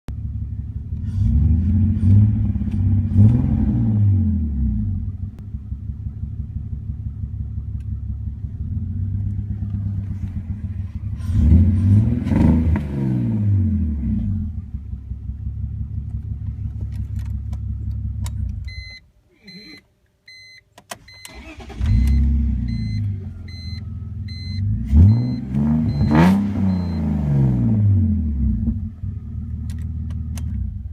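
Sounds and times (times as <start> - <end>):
car engine running roughly: 0.1 - 3.1, 4.9 - 12.2
engine revving: 0.5 - 18.6, 21.3 - 30.9
electronic warning chime: 21.9 - 27.1.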